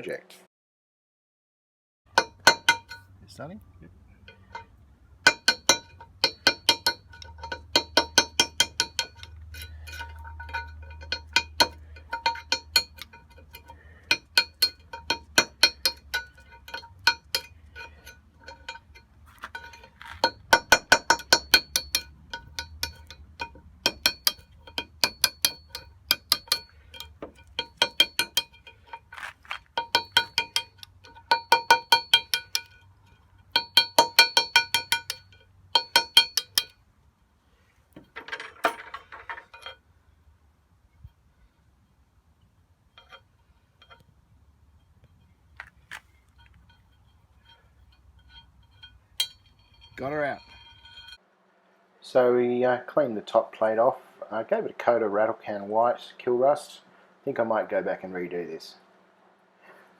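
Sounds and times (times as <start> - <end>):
hammer striking steel: 2.1 - 3.1, 4.3 - 32.9, 33.5 - 36.8, 46.4 - 51.2.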